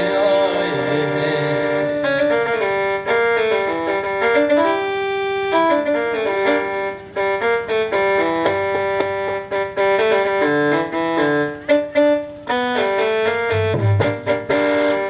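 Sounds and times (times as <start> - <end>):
keyboard melody: 0.0 - 15.0
low drum hits: 13.6 - 14.4.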